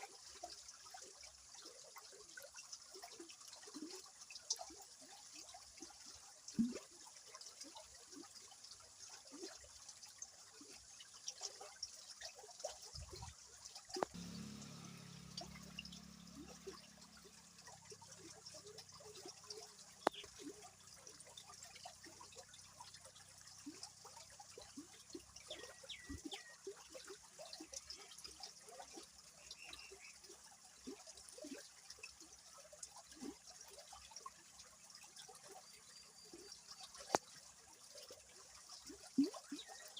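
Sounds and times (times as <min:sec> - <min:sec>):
river water trickling and splashing: 0:00.0 - 0:39.9
low hum: 0:14.2 - 0:18.0.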